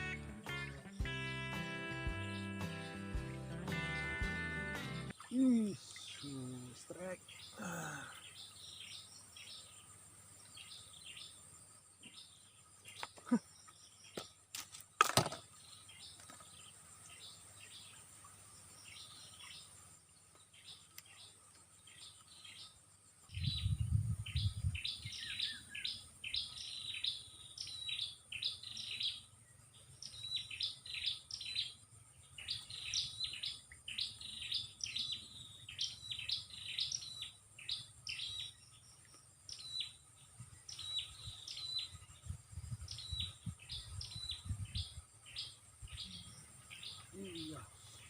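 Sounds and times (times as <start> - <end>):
songbird chirping: 0.0 - 48.0
faint insect buzz: 15.6 - 48.0.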